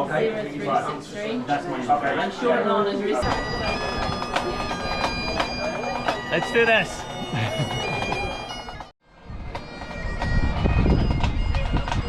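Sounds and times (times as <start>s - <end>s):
bagpipes playing: 3.2s - 12.0s
wind rumble on microphone: 9.1s - 12.0s.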